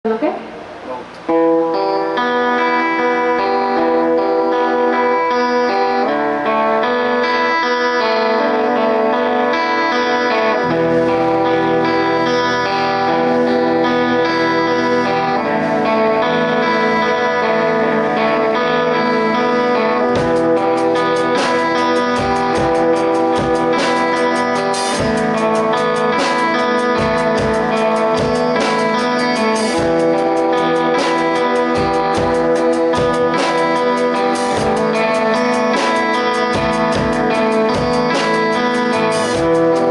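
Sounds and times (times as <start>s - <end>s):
guitar chords: 0.0s - 39.9s
band playing: 0.7s - 39.9s
drums steady beat: 20.0s - 39.9s.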